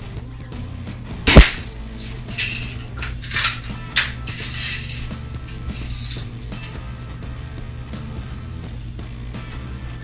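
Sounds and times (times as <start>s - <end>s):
metallic clicks and rattles: 1.3s - 7.0s.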